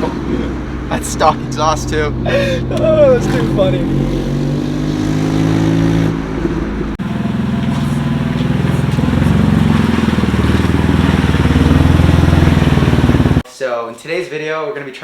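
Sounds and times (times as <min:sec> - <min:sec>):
car engine running with exhaust pulsing: 0:05.5 - 0:13.4.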